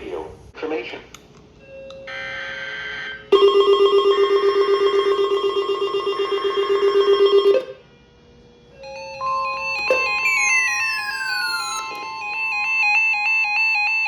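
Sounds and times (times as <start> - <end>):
electronic tone beeping rapidly: 8.8 - 13.1
stepped electronic tones: 8.8 - 13.2
screechy digital data bursts: 8.9 - 12.7.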